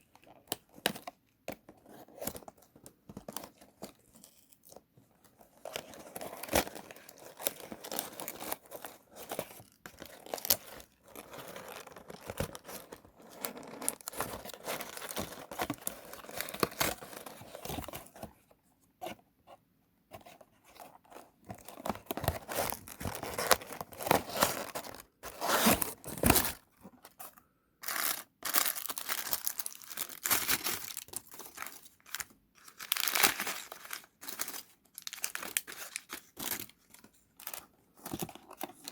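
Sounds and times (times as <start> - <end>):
plastic wrapping tearing and crinkling: 27.8 - 36.7.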